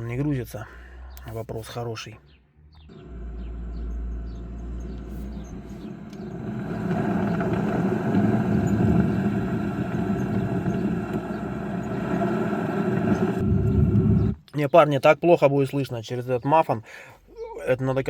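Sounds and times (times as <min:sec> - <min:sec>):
muffled vehicle noise: 0:00.0 - 0:14.4.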